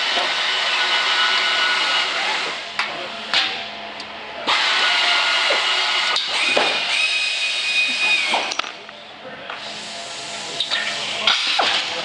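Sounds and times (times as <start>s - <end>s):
hand drill whining: 4.5s - 8.6s.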